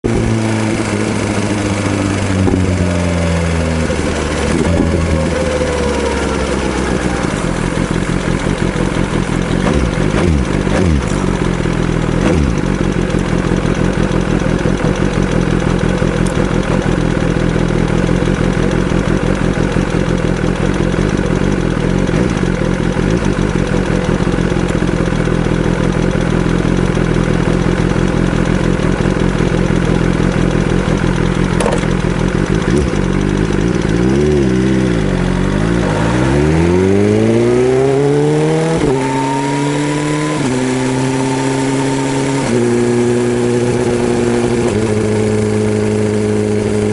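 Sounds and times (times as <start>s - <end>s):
motorcycle engine idling: 0.1s - 36.3s.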